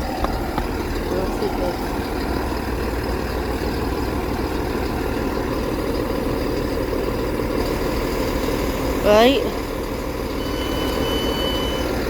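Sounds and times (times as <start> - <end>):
diesel train engine idling: 0.0 - 12.0.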